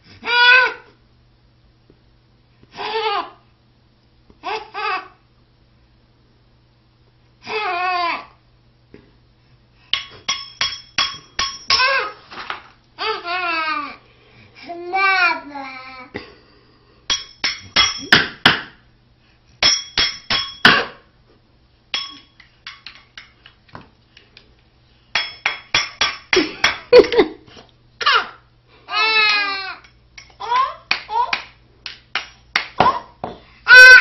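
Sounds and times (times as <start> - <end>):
baby banging on something: 9.9 - 12.1, 17.1 - 18.7, 19.6 - 21.0, 32.1 - 34.0
baby babbling: 28.0 - 31.4.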